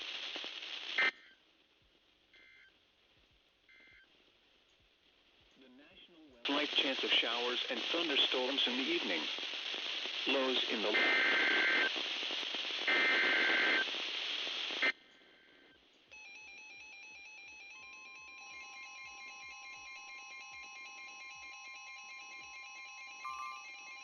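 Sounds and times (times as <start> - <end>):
radio static: 5.8 - 15.7
repeating electronic tones: 23.2 - 24.0
two-tone data warble: 23.2 - 24.0
steady electronic tone: 23.3 - 23.9.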